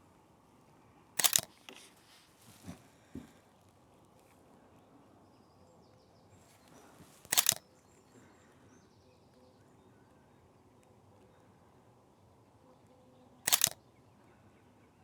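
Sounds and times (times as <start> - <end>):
quiet outdoor ambience: 0.0 - 15.0
camera shutter burst: 1.2 - 1.6, 7.3 - 7.6, 13.5 - 13.8.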